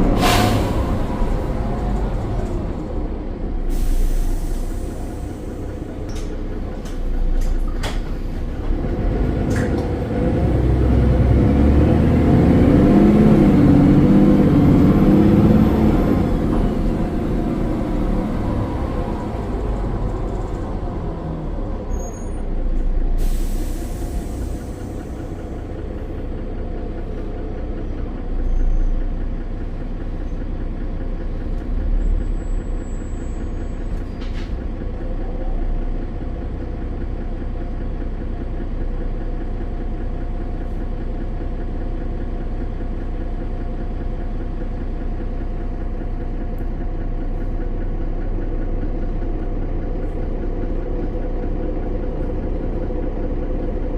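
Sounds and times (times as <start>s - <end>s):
diesel bus engine running: 0.0s - 53.9s
compressed air hiss: 23.2s - 24.8s.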